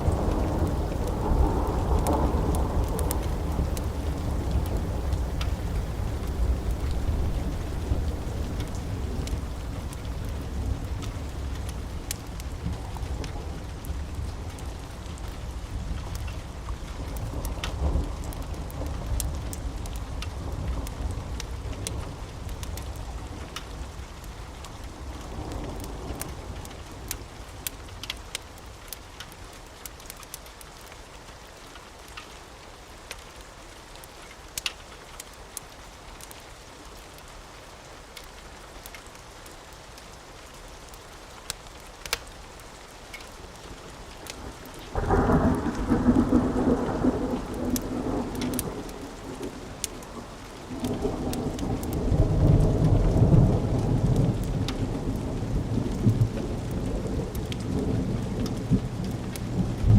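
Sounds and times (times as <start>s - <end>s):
long roll of thunder: 0.0s - 14.9s, 44.4s - 59.9s
thunderclap and rumbling: 0.0s - 16.3s, 44.3s - 59.9s
steady rain: 0.0s - 59.9s
wood fire crackling: 0.0s - 59.9s.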